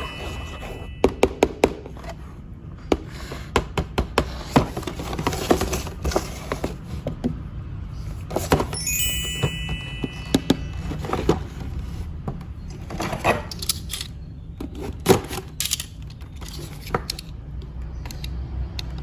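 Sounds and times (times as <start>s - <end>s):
electronic chime tune: 0.0s - 1.0s, 8.8s - 11.0s.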